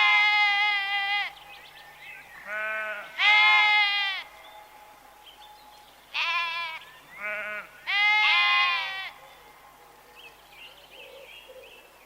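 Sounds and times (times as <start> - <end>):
livestock bleating: 0.0 - 1.4, 2.5 - 4.4, 6.1 - 9.2.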